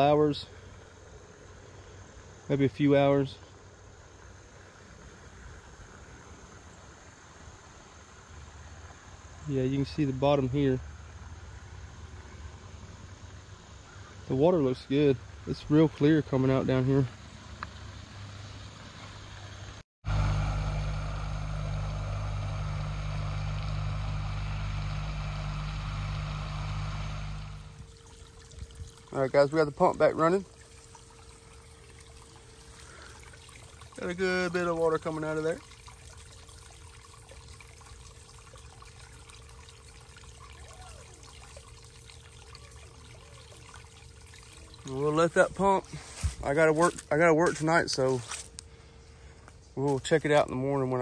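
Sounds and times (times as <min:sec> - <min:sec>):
motor humming: 0:20.1 - 0:46.0
faint steady tone: 0:20.1 - 0:46.1
water pouring from pipe: 0:22.8 - 0:48.6.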